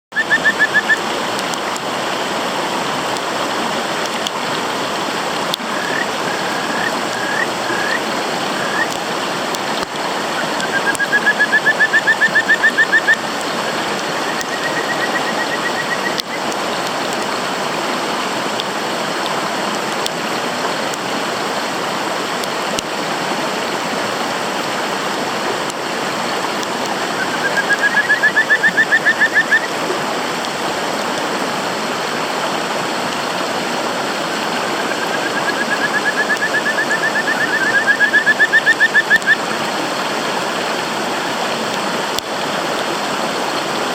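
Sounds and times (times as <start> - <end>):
rushing water: 0.0 - 43.9
frogs calling with trills: 0.1 - 1.6, 5.3 - 17.3, 26.6 - 30.6, 34.2 - 40.0.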